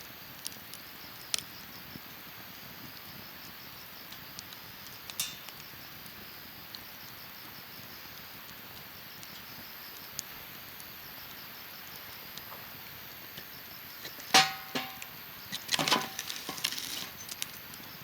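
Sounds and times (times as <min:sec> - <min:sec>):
wood fire crackling and popping: 0:00.1 - 0:18.0.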